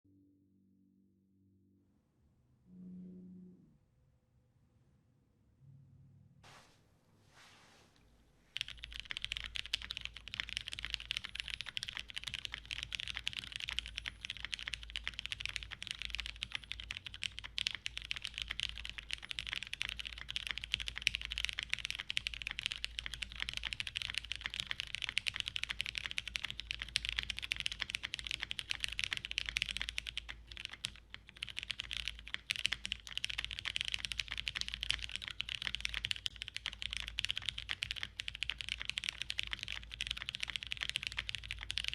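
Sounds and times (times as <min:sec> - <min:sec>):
fast typing on mechanical keyboard: 0:08.6 - 0:41.9.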